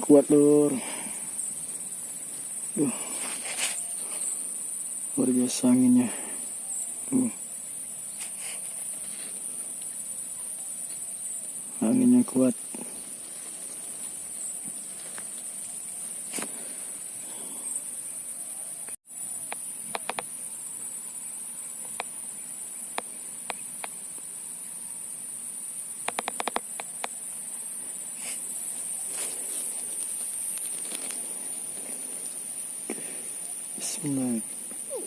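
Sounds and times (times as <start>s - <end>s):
insects chirring: 0.0s - 35.0s
faint clicks: 19.5s - 20.3s, 26.0s - 27.2s.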